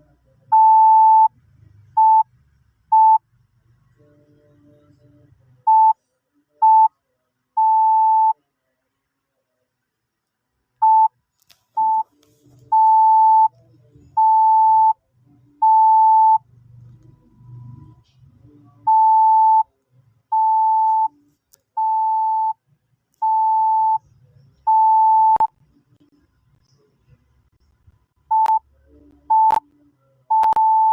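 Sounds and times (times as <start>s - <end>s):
morse code beeps: 24.7s - 25.5s, 28.3s - 28.6s, 29.3s - 29.6s, 30.3s - 30.9s.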